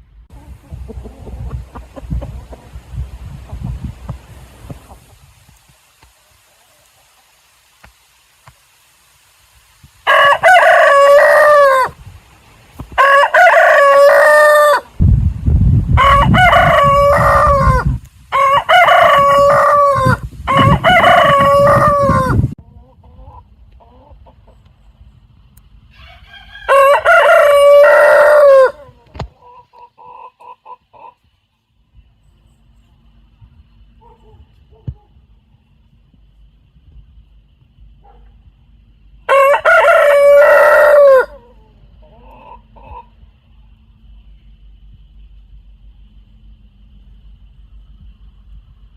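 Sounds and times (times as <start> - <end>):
roosters crowing: 10.0 - 12.0, 12.9 - 15.0, 15.9 - 22.6, 25.9 - 30.3, 39.2 - 43.2.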